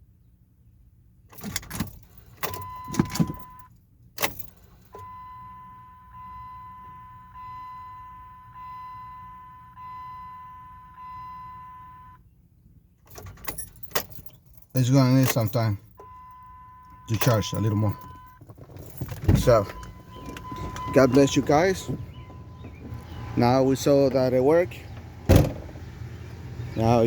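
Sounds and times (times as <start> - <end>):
clunks and clicks: 1.4 - 3.5, 17.1 - 23.4
car warning chime: 2.5 - 3.7, 4.9 - 12.2, 14.9 - 24.8.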